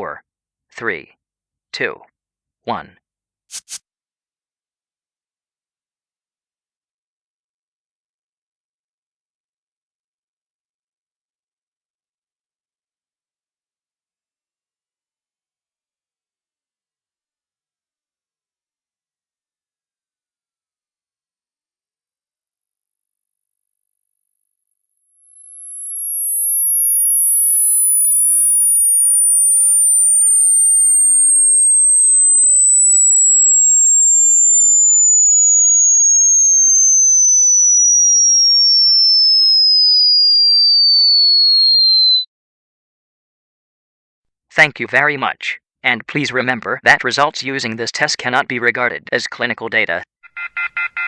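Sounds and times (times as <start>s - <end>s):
pure tone sliding downward: 13.9s - 42.3s.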